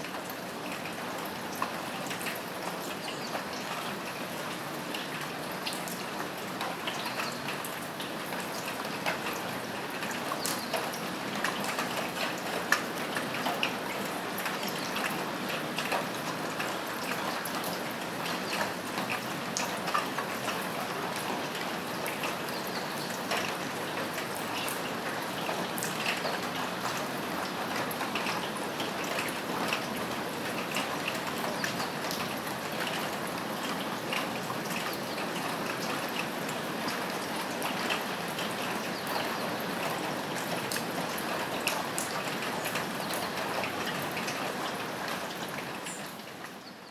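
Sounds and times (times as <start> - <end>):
rain falling on a roof: 0.0 - 46.9
raindrops ticking and splashing: 0.0 - 46.9.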